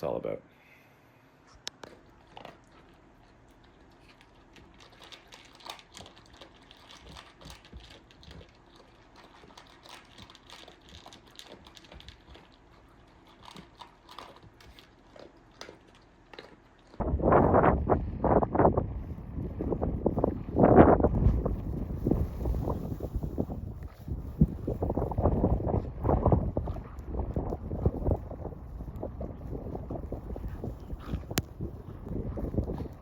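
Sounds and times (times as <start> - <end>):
wind on microphone: 17.0 - 33.0.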